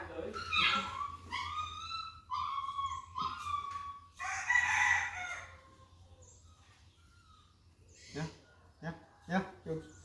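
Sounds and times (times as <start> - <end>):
rooster crowing: 4.2 - 5.8.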